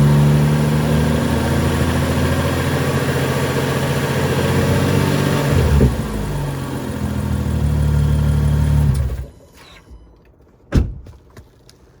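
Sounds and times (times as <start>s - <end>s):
car engine idling: 5.6s - 9.3s.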